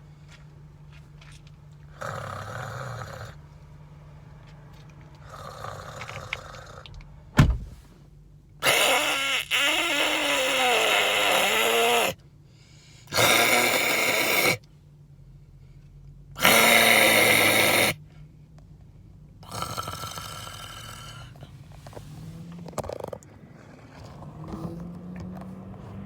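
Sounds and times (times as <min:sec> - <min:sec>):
person making harsh vocal noises: 0:08.6 - 0:12.2, 0:13.1 - 0:14.6, 0:16.4 - 0:18.0.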